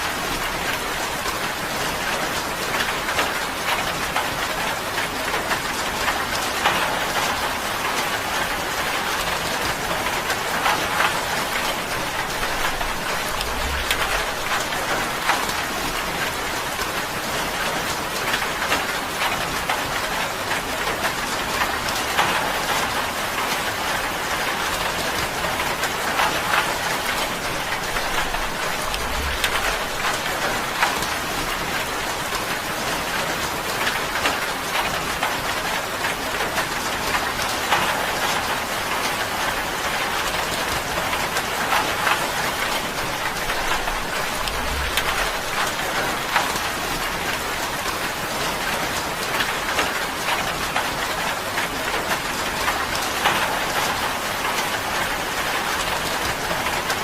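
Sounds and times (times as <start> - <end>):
rain on a tin roof: 0.0 - 57.0.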